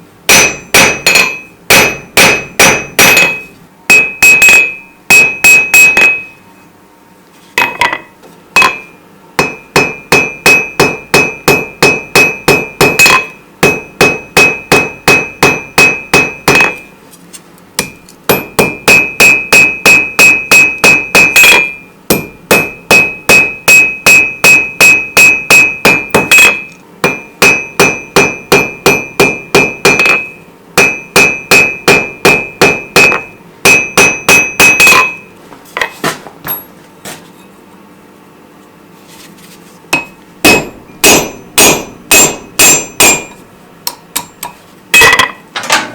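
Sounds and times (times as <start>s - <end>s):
hammer striking steel on anvil: 0.3s - 6.4s, 7.6s - 17.0s, 17.8s - 35.9s, 39.9s - 45.5s.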